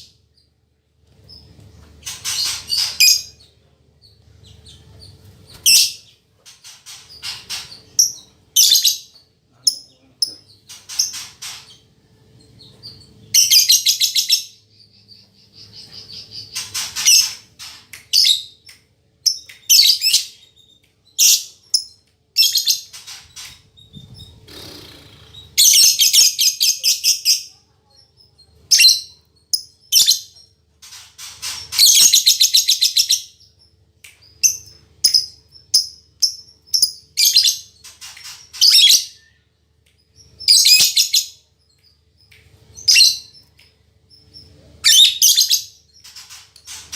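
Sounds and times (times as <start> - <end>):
lovebird chirping: 23.6 - 30.5.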